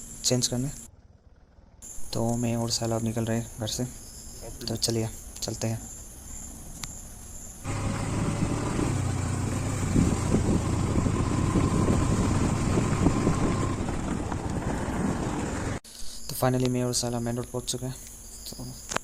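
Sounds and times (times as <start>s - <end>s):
faint crickets: 0.0s - 11.7s, 14.8s - 19.0s
motorcycle engine riding along: 7.6s - 15.8s
road noise rushing: 7.6s - 15.8s.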